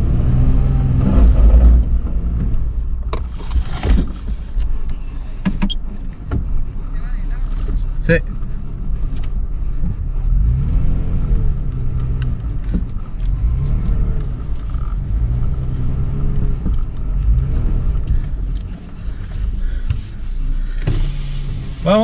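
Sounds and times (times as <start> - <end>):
car engine revving: 0.0 - 2.8, 9.4 - 22.0
low engine rumble: 0.0 - 22.0.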